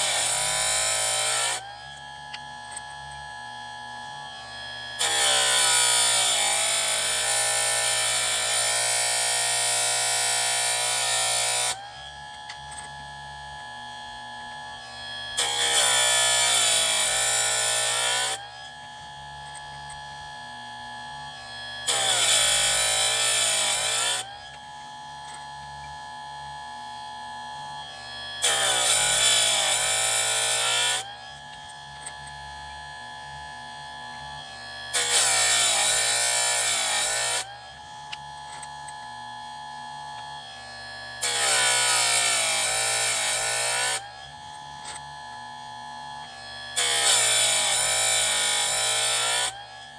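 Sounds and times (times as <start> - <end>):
sharpener motor humming: 0.0 - 49.9
grinding wheel on chain tooth: 28.4 - 32.4, 34.9 - 37.5.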